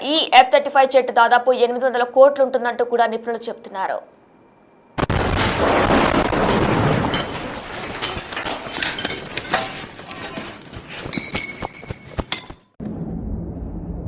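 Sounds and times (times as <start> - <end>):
explosion blast: 5.0 - 9.3, 12.8 - 14.0
rumble with crackles and pops: 5.0 - 11.1.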